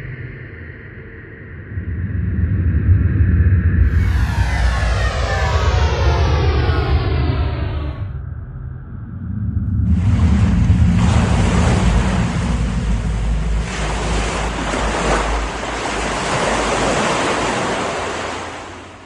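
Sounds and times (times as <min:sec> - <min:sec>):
ocean waves rushing: 0:09.9 - 0:19.0.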